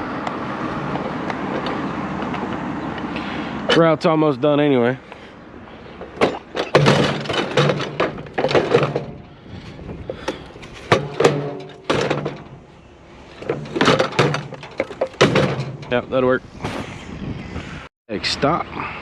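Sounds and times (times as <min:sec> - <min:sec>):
scrap items knocking and clattering: 0:06.0 - 0:09.4, 0:10.0 - 0:12.7, 0:13.4 - 0:16.0.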